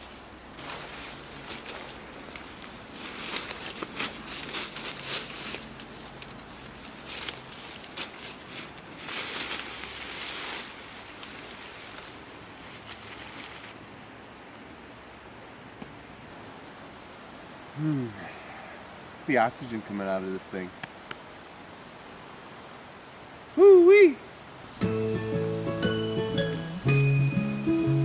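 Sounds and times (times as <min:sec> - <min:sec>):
dry leaves rustling and crackling: 0:00.0 - 0:14.9.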